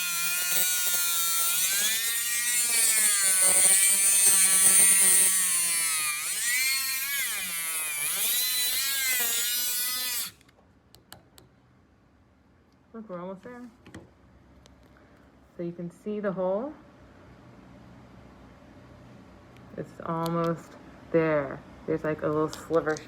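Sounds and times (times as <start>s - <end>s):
rotary tool motor whine: 0.0s - 10.4s.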